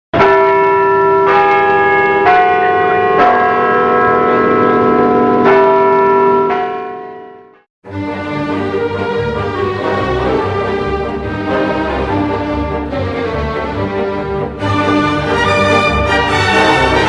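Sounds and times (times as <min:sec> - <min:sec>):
church bells ringing: 0:00.2 - 0:07.7, 0:08.4 - 0:17.0
music: 0:07.8 - 0:17.0.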